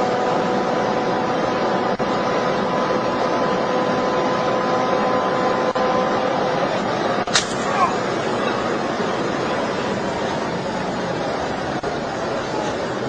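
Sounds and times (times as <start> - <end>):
car engine hum: 0.0 - 13.0
road and wind noise: 0.0 - 13.0.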